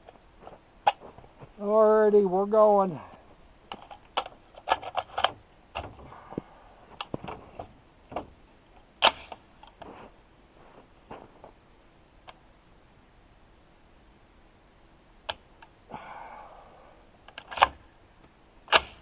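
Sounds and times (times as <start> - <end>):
handling clicks and knocks: 3.7 - 6.1.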